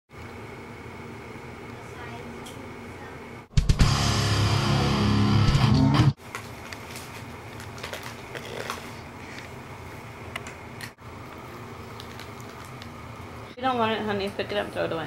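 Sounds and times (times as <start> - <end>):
guitar music: 3.8 - 6.2.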